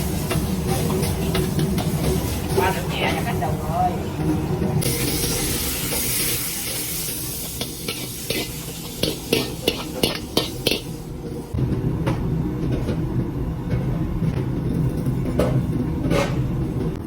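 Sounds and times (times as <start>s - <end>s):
food sizzling in a hot pan: 0.0s - 3.5s, 4.8s - 11.2s.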